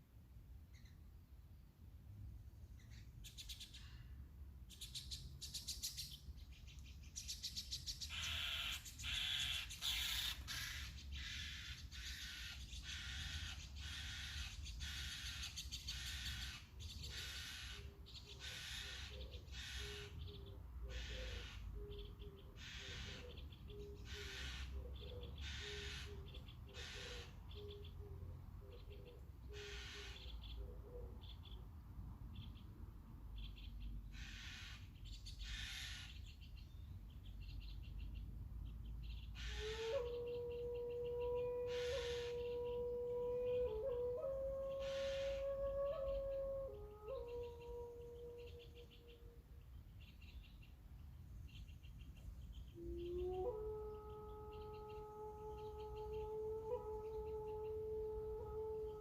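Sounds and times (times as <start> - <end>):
harsh crow-like bird calls: 8.0 - 28.0, 28.6 - 31.6, 33.4 - 36.4, 39.0 - 49.3.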